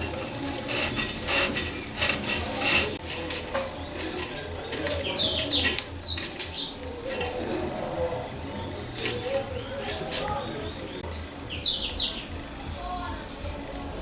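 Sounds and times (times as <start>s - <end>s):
clicks and scrapes of handling: 0.0s - 7.7s, 8.9s - 10.6s
birds chirping: 0.0s - 13.7s.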